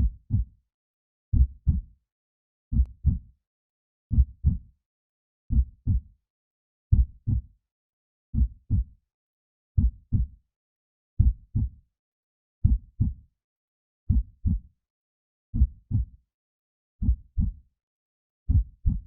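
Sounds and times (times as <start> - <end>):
heartbeat thumps: 11.2 - 11.7, 15.6 - 16.0, 18.5 - 19.0.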